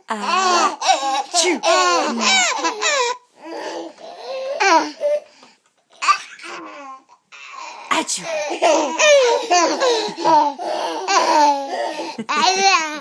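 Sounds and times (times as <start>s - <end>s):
babies laughing: 0.3s - 3.2s, 8.3s - 13.0s.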